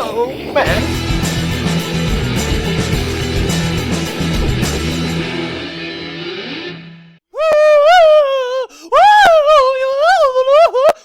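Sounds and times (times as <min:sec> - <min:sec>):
distorted electric guitar rock music: 0:00.6 - 0:07.2.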